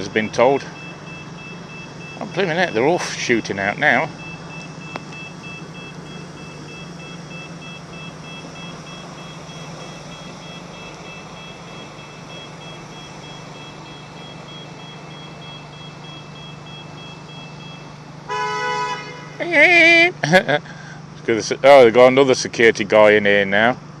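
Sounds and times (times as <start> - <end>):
high two-tone warning beeps: 0.0 - 18.1
low engine hum: 0.0 - 24.0.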